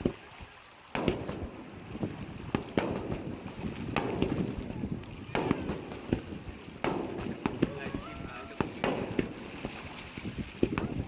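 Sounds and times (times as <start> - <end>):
fireworks crackling: 1.0 - 9.9
fireworks bangs: 2.5 - 9.8.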